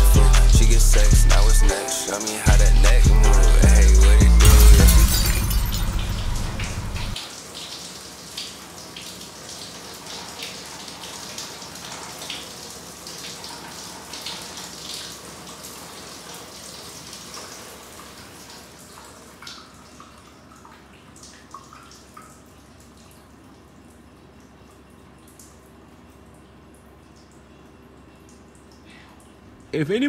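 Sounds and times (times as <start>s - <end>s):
water running and splashing: 5.0s - 23.9s
water drips: 5.0s - 29.8s.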